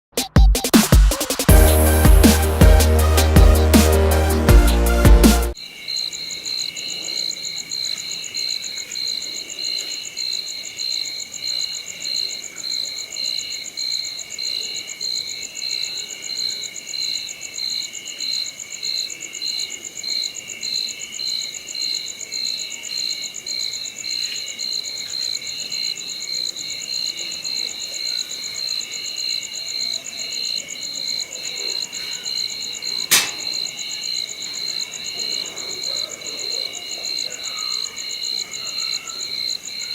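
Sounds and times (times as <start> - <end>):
crickets chirping: 5.6 - 39.9
sharp click: 33.1 - 33.6.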